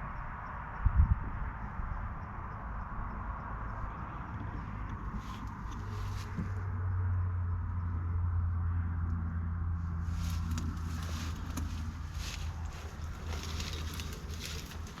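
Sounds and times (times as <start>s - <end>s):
light ticking and rustling: 1.6s - 6.8s, 10.1s - 15.0s
tractor diesel engine running: 1.6s - 15.0s.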